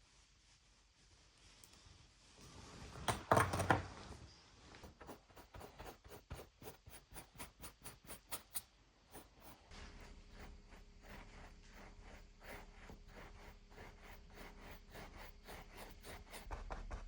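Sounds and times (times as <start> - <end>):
brush strokes scratching on paper: 4.8 - 17.0.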